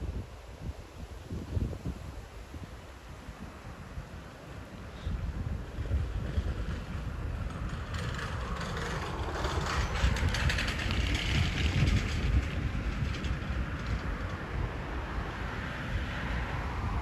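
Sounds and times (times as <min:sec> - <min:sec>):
wind buffeting microphone: 0:00.0 - 0:17.0
train approaching: 0:04.2 - 0:17.0.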